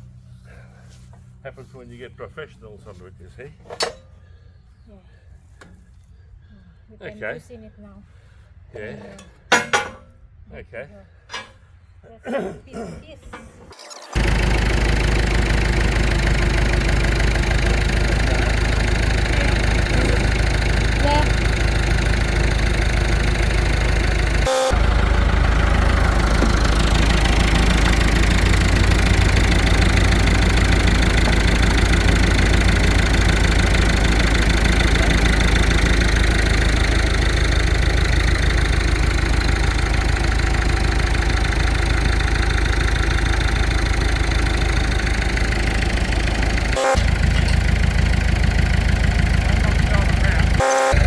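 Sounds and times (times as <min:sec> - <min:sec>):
diesel engine idling: 0:14.1 - 0:51.0.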